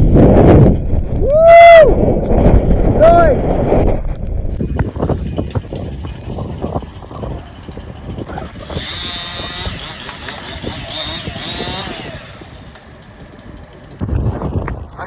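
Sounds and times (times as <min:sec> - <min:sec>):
low rumble of wind: 0:00.0 - 0:15.0
chainsaw cutting: 0:04.6 - 0:14.5.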